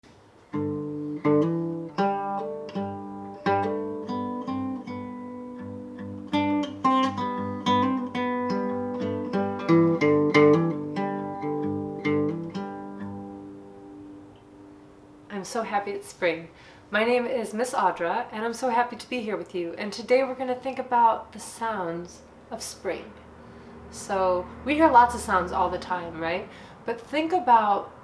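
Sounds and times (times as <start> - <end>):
acoustic guitar plucked chords: 0.1 - 15.4.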